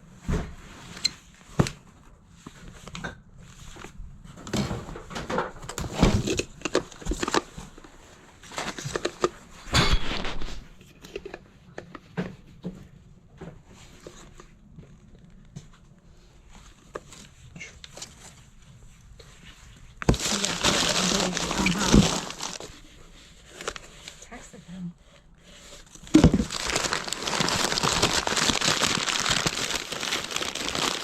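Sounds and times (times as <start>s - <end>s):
rummaging through boxes: 3.5s - 9.4s, 20.0s - 22.8s, 25.7s - 31.0s.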